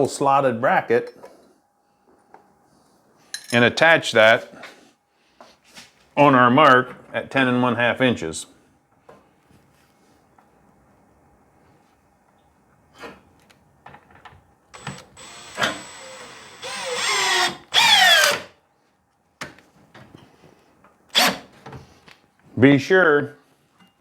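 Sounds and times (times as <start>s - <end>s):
power drill motor whine: 14.8s - 18.5s.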